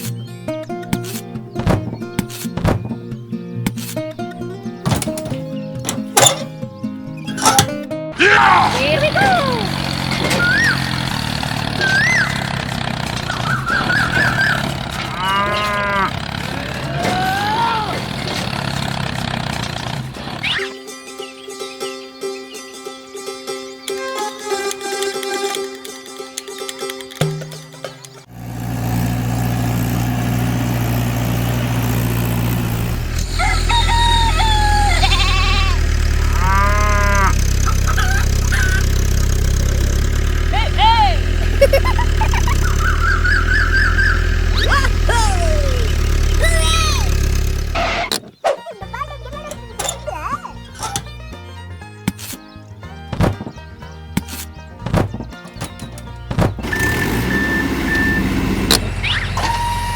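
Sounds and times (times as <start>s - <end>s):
engine running steadily: 7.4s - 20.6s, 28.2s - 52.2s, 52.9s - 59.9s
farm animal calls: 8.2s - 18.4s, 33.2s - 51.2s, 56.6s - 59.9s
low motor hum: 8.4s - 20.5s, 28.3s - 51.4s, 54.6s - 59.9s
cow mooing: 15.0s - 18.0s, 34.2s - 37.7s.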